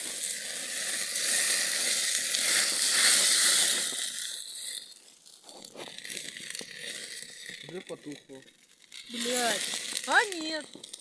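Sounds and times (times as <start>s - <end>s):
meat sizzling in a pan: 0.0s - 4.8s.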